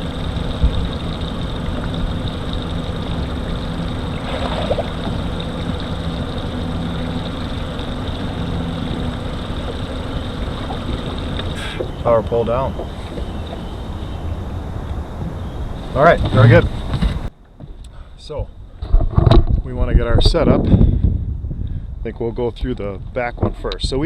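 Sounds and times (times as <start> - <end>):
boat engine idling: 0.0 - 18.8.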